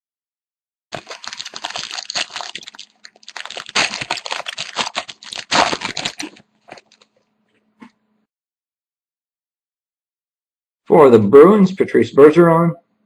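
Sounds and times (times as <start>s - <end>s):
wrapper crinkling as torn open: 0.9s - 7.2s.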